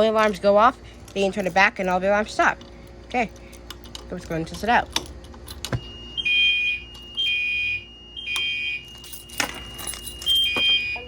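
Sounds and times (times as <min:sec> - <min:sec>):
fire alarm horns: 0:05.8 - 0:11.0.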